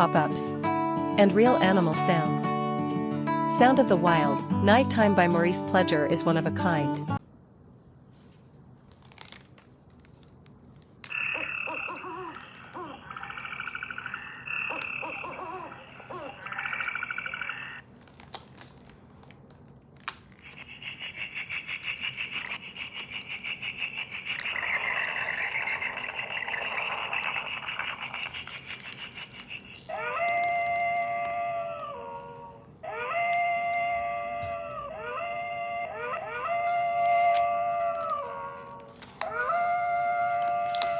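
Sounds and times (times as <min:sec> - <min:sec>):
recorded frog calls from small speaker: 0:11.1 - 0:17.8, 0:20.4 - 0:31.6.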